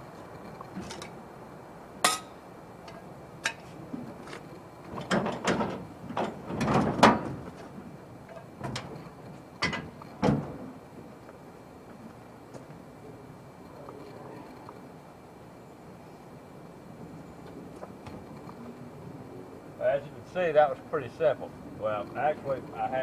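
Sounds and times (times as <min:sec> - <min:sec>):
knocks and metallic clanks: 0:04.9 - 0:07.7, 0:09.6 - 0:10.7.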